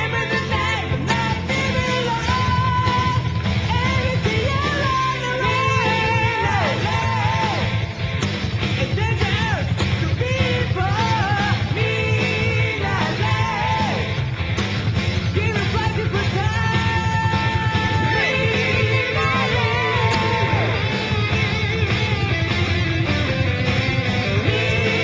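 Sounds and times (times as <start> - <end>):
hard rock band: 0.0 - 25.0.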